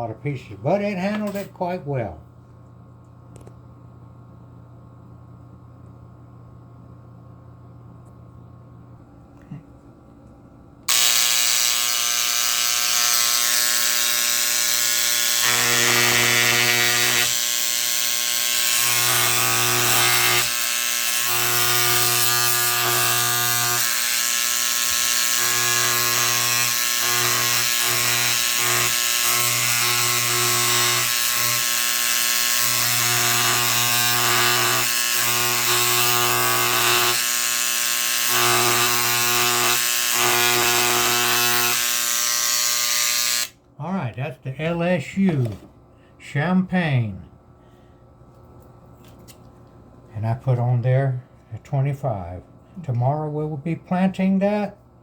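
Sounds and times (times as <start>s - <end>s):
electric engraver buzzing on metal: 10.9s - 43.6s.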